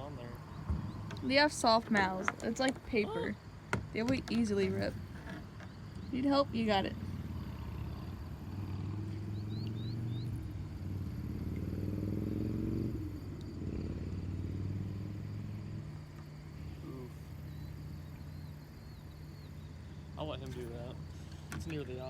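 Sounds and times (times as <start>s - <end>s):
motor droning: 0.4s - 22.0s
faint high chirps: 9.1s - 10.5s.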